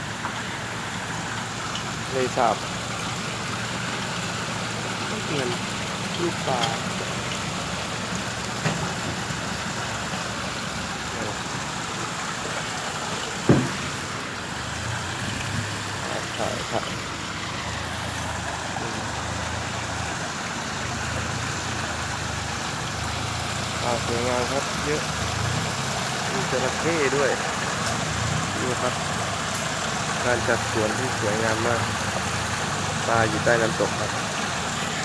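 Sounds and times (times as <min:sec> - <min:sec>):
waterfall rushing: 0:00.0 - 0:35.0
sharp knock: 0:13.5 - 0:14.0.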